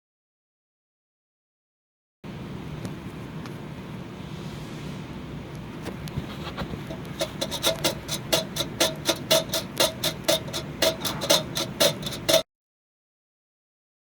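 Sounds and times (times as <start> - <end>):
diesel engine rattling clatter: 6.4 - 12.4.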